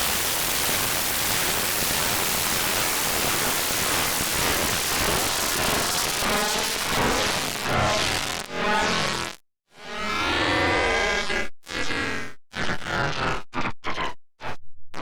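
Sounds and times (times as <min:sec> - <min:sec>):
harsh synthesized static noise: 0:00.0 - 0:09.4.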